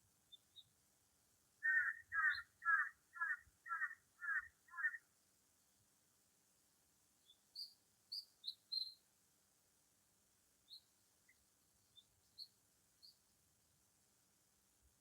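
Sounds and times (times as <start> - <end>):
faint high bird chirps: 0.3 - 0.8, 1.6 - 5.1, 7.2 - 9.1, 10.6 - 13.4
animal calls: 1.6 - 5.0.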